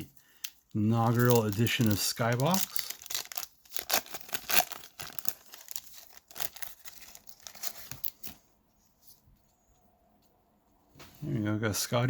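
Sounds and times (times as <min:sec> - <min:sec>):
wrapper tearing and crinkling: 0:00.8 - 0:08.4.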